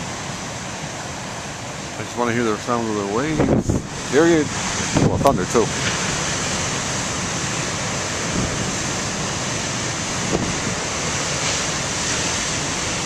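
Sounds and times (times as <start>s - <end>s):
ocean surf breaking: 0.0s - 13.0s
wind buffeting microphone: 3.0s - 13.0s.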